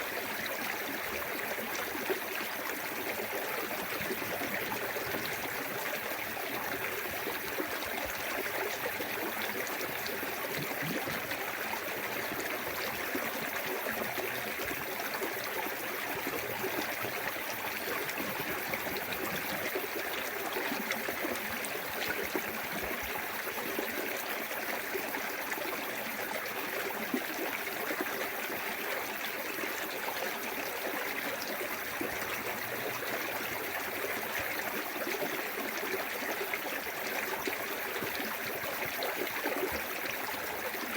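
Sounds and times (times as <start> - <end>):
water trickling and gurgling: 0.0 - 40.9.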